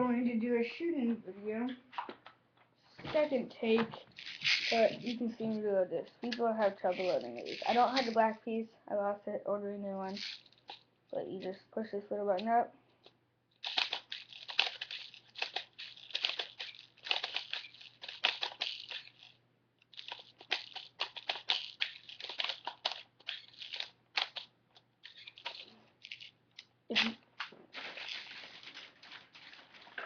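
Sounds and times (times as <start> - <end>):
airsoft bbs and magazine rattling: 3.9 - 5.6, 6.2 - 8.2, 10.1 - 10.8, 13.0 - 30.0.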